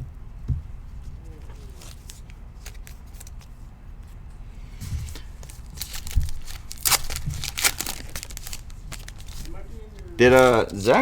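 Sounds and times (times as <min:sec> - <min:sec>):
trading cards being handled: 0:01.3 - 0:03.6, 0:05.1 - 0:11.0
foil wrappers crinkling: 0:01.5 - 0:03.5, 0:05.1 - 0:11.0.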